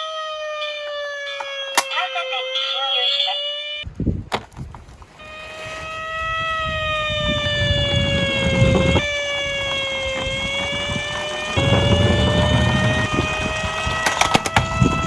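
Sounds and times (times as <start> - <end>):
siren wailing: 11.6 - 13.5
vehicle rumble: 11.6 - 13.6.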